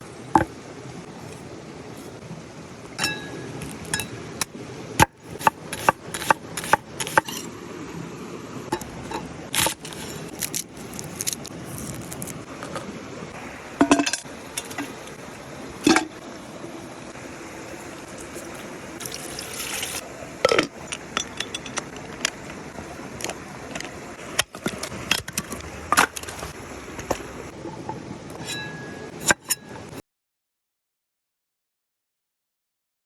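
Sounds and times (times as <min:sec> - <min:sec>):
utensils clinking against a pot: 0:03.0 - 0:04.2, 0:05.0 - 0:07.5, 0:08.7 - 0:11.5, 0:13.8 - 0:15.2, 0:15.8 - 0:16.2, 0:18.2 - 0:26.5, 0:28.3 - 0:29.9
hiss of food cooking: 0:12.4 - 0:21.2.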